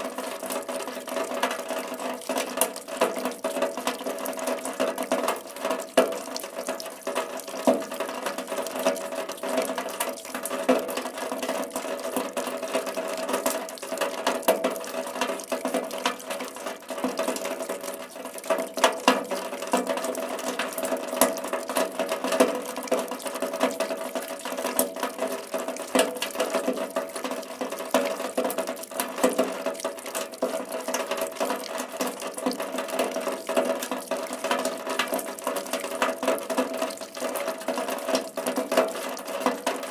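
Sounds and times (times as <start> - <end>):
steady rain patter: 0.0 - 39.9.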